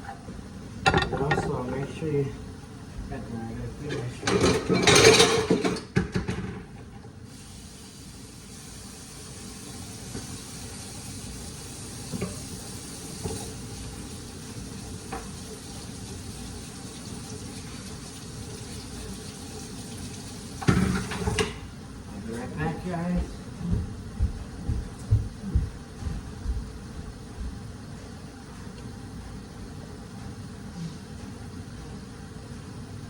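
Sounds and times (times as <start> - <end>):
meat sizzling in a skillet: 7.3 - 21.4.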